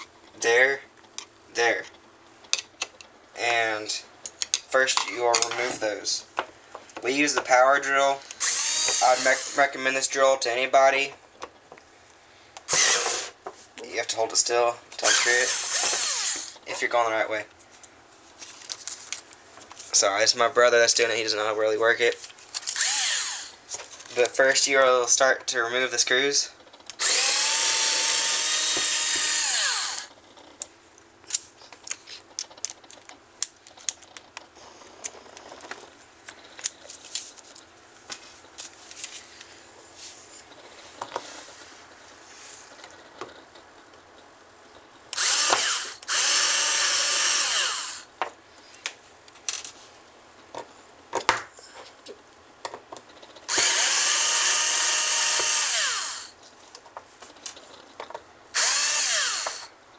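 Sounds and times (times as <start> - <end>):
power drill unscrewing: 58.6 - 59.7.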